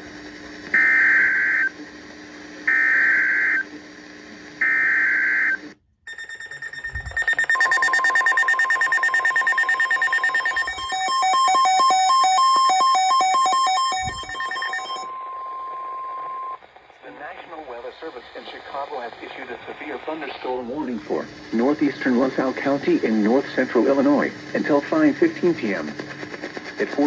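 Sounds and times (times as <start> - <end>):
buzzy digital data tones: 6.1 - 15.1
rapidly pulsing electronic beep: 6.1 - 15.3
long alert tone: 6.1 - 15.4.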